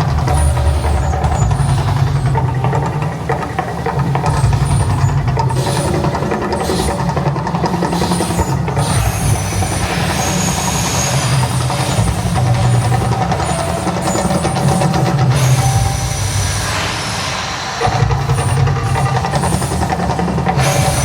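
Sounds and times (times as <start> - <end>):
deep rumble of volcano show: 0.0 - 16.6.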